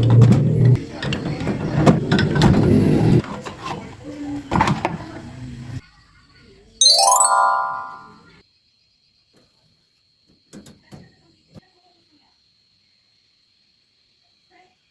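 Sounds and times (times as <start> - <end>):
bright chime: 6.8 - 8.1
faint high-pitched tone: 6.8 - 8.2.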